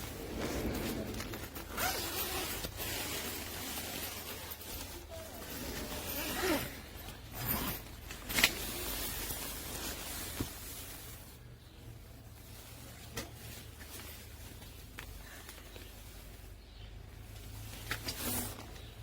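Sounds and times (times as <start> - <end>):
tent zipping and rustling: 0.0 - 11.4, 12.3 - 19.0.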